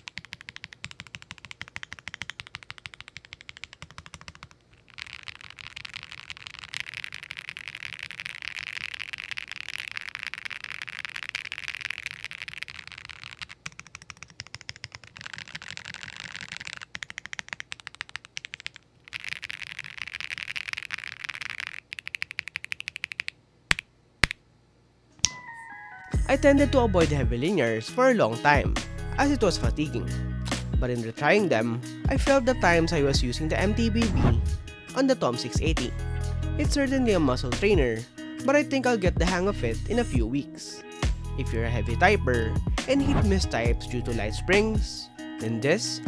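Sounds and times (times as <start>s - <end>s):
mechanical keyboard typing: 0.0s - 23.4s.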